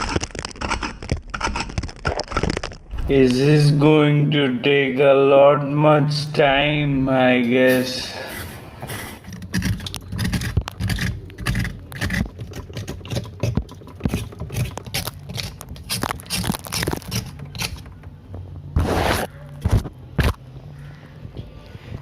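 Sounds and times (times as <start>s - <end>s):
scraping ice in fridge: 8.2s - 17.9s.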